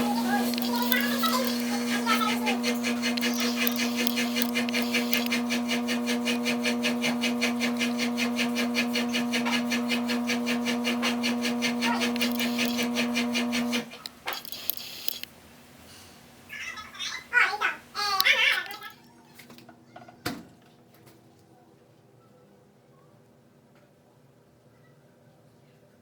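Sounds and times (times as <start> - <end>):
machine electric hum: 0.0 - 15.3
fast even ticking: 0.2 - 10.0, 10.8 - 13.3.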